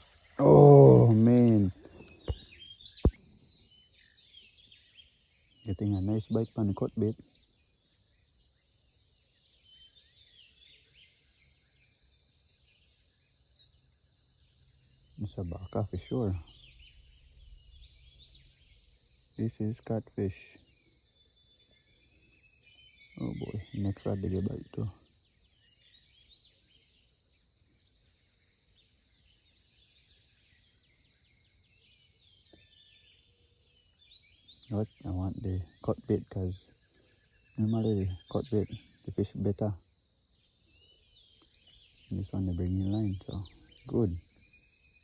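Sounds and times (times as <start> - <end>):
high insect hum: 0.0 - 45.0
soft bird chirps: 0.0 - 45.0.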